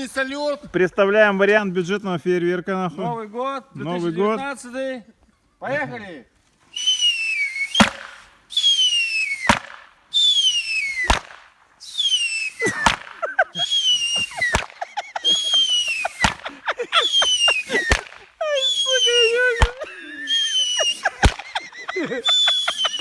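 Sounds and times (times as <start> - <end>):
falling firework whistles: 6.7 - 23.0
crackling firework pops: 6.8 - 16.6, 17.2 - 18.4, 19.6 - 19.9, 20.6 - 21.7
firework bangs: 6.8 - 23.0.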